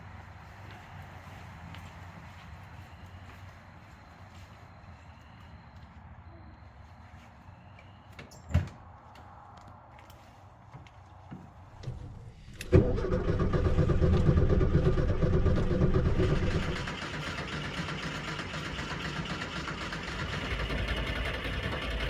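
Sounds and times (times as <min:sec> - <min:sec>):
engine starter cranking: 0:11.8 - 0:22.0.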